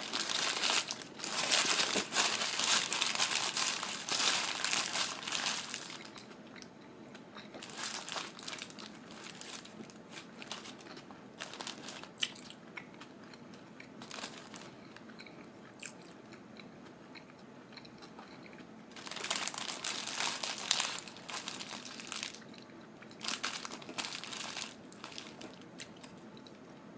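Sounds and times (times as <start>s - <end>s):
wrapper crinkling: 0.0s - 6.3s, 7.6s - 12.4s, 14.0s - 14.7s, 19.0s - 22.5s, 23.2s - 26.1s
biting and chewing food: 0.0s - 26.6s.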